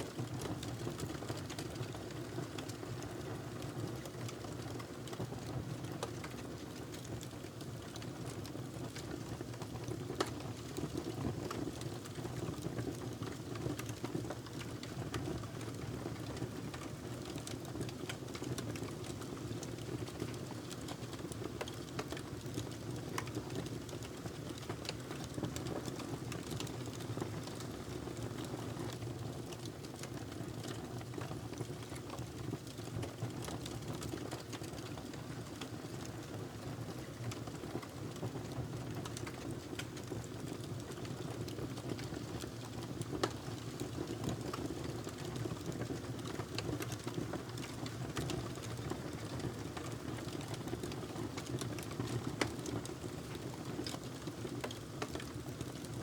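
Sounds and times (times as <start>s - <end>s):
fire crackling and popping: 41.9s - 56.0s.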